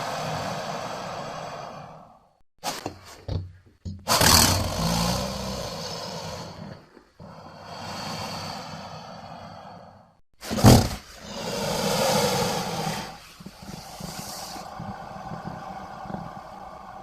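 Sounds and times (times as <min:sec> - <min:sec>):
creature hissing growl: 0:00.0 - 0:02.3, 0:04.1 - 0:10.1, 0:11.2 - 0:17.0
creature roar: 0:04.2 - 0:06.6, 0:11.2 - 0:17.0.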